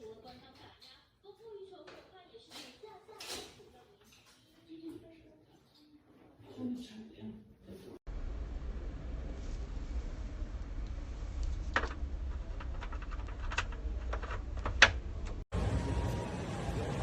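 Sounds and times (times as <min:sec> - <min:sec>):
low steady rumble: 0:08.1 - 0:17.0.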